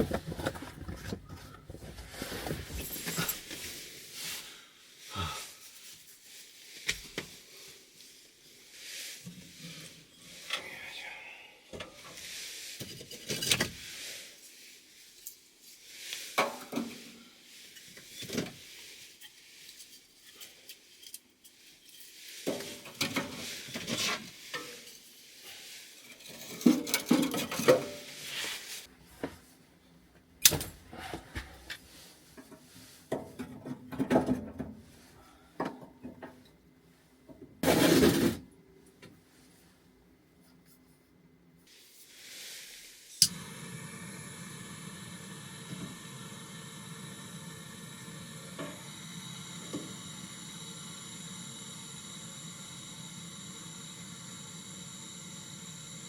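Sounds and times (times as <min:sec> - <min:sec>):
cookware and utensils clattering: 0:12.8 - 0:13.8, 0:26.0 - 0:28.2.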